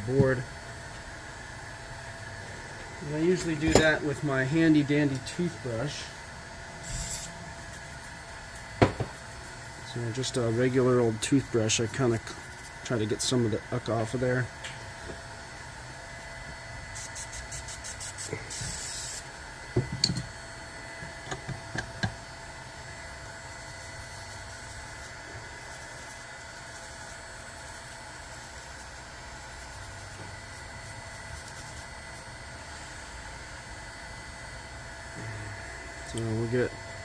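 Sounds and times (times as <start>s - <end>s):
aerosol can spraying: 6.8s - 9.5s, 17.0s - 19.2s.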